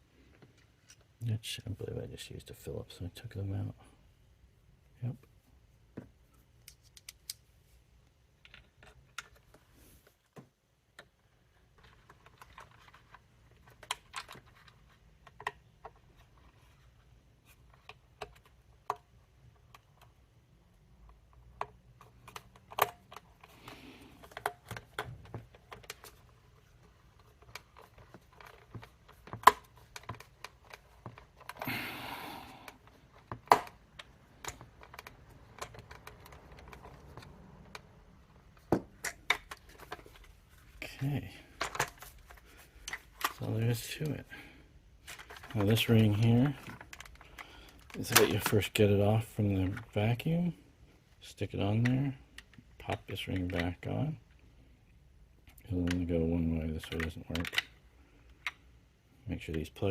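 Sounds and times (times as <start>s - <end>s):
plastic parts clicking: 6.6s - 7.4s, 10.9s - 40.3s, 41.5s - 44.2s, 45.0s - 50.2s, 51.8s - 54.4s, 56.7s - 58.7s.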